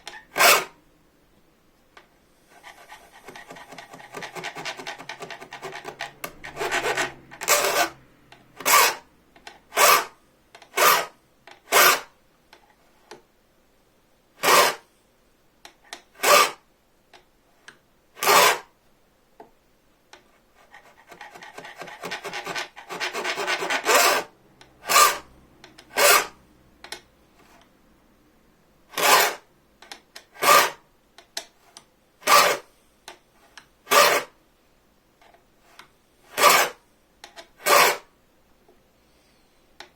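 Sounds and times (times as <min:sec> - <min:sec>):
short scratchy file strokes: 0:00.1 - 0:00.8, 0:02.4 - 0:08.0, 0:08.6 - 0:09.1, 0:09.7 - 0:10.1, 0:11.7 - 0:12.1, 0:14.4 - 0:14.8, 0:20.6 - 0:25.3, 0:25.9 - 0:26.4, 0:28.9 - 0:29.5, 0:30.4 - 0:30.8, 0:32.2 - 0:32.7, 0:33.9 - 0:34.3, 0:36.3 - 0:36.8, 0:37.6 - 0:38.1
file rasping on saw blade: 0:00.2 - 0:00.8, 0:02.6 - 0:08.0, 0:08.6 - 0:09.1, 0:09.7 - 0:10.2, 0:10.8 - 0:12.1, 0:14.4 - 0:14.8, 0:16.2 - 0:16.6, 0:18.2 - 0:18.7, 0:20.6 - 0:25.3, 0:25.9 - 0:26.4, 0:28.9 - 0:29.5, 0:30.4 - 0:30.8, 0:32.2 - 0:32.7, 0:33.9 - 0:34.3, 0:36.3 - 0:36.8, 0:37.6 - 0:38.1.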